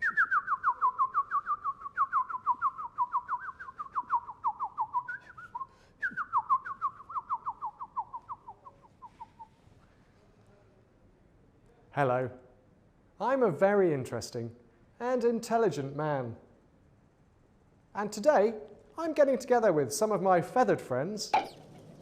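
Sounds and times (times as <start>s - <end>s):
whistled song of falling notes: 0.0s - 9.2s.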